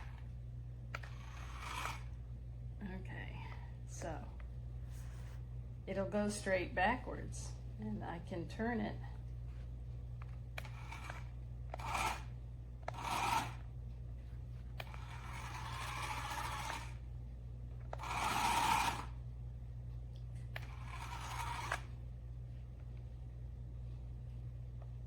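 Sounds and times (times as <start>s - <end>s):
toy truck motor and tyres rushing: 0.0s - 0.2s, 0.9s - 2.2s, 10.6s - 13.6s, 14.8s - 17.0s, 17.9s - 19.2s, 20.6s - 21.9s.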